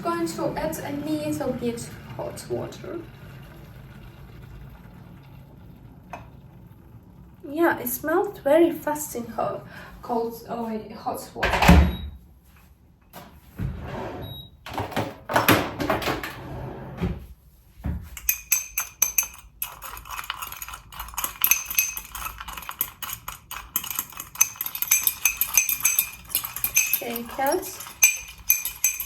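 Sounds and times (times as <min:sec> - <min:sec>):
spoon clinking in a cup: 0:18.2 - 0:29.0.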